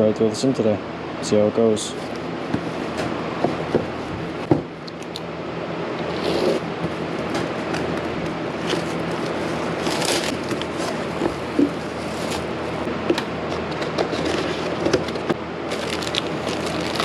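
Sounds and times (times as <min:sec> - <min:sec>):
computer fans whirring: 0:00.0 - 0:17.0
packaging rustling: 0:08.6 - 0:12.8, 0:15.0 - 0:17.0.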